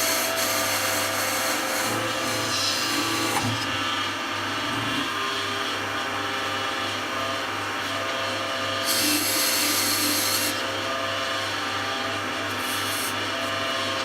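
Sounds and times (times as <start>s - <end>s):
wood lathe running: 0.0s - 3.5s, 8.8s - 14.0s.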